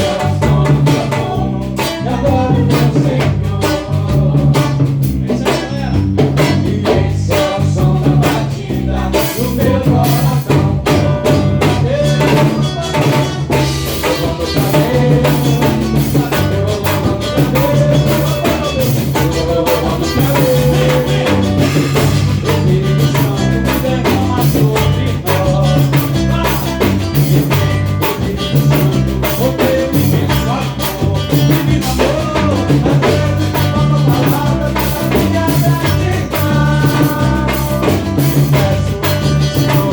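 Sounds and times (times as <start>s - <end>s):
band music: 0.0s - 39.9s
drum kit beat: 0.0s - 39.9s.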